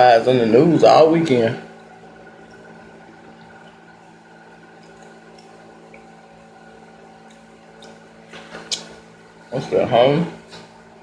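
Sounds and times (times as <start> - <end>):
steady electrical hum: 0.0 - 11.0
mouth clicks and chewing smacks: 7.2 - 9.0.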